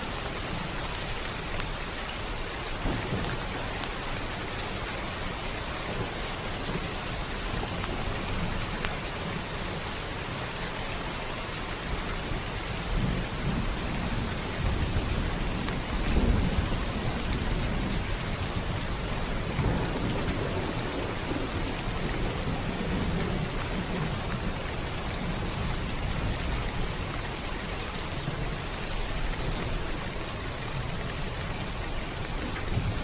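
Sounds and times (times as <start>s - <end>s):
heavy rain drumming on a roof: 0.0s - 33.0s
thunder rumbling: 12.8s - 33.0s.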